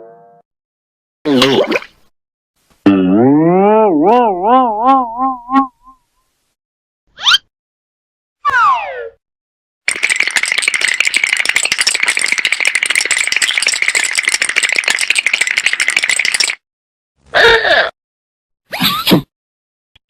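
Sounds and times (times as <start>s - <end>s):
cartoon rattle: 9.9s - 16.6s.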